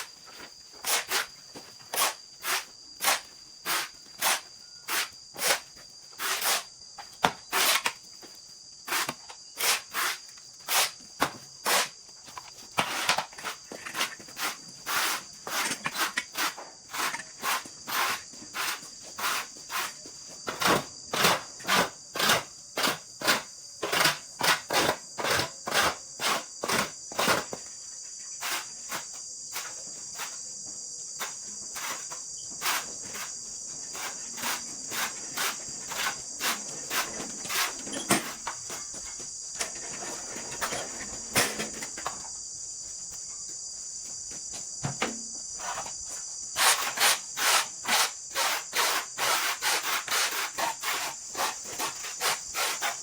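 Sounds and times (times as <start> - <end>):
insects chirping: 0.0 - 53.0
hand saw cutting wood: 0.8 - 1.3, 1.9 - 5.6, 6.2 - 6.7, 7.5 - 7.9, 8.9 - 11.0, 11.6 - 12.0, 12.8 - 20.0, 20.6 - 27.5, 33.9 - 38.5, 46.6 - 53.0.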